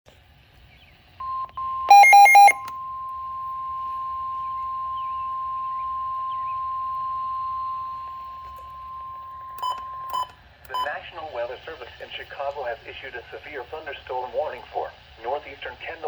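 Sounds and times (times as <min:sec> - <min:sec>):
rapid electronic beeps: 0:01.9 - 0:02.7
steady high alert tone: 0:01.9 - 0:02.7.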